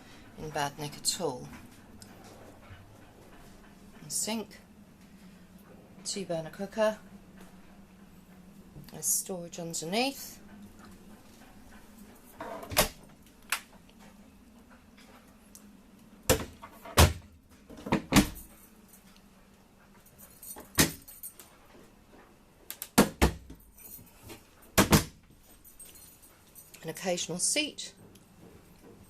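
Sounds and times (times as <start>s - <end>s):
cupboard doors knocking and clicking: 23.0s - 23.6s, 24.8s - 25.2s.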